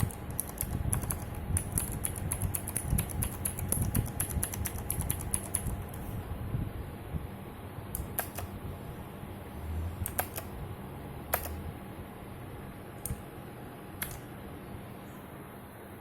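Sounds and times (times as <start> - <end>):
mechanical keyboard key clicks: 8.0 - 8.5, 14.0 - 14.2.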